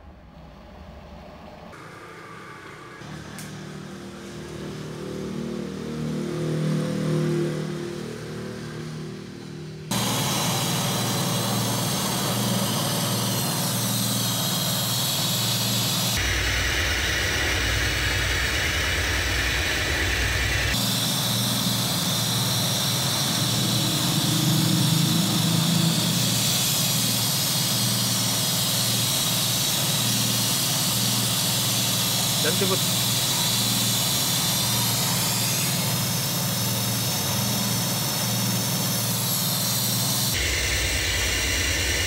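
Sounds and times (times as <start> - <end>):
car engine running: 9.6 - 42.0
loud steady hiss: 9.9 - 42.0.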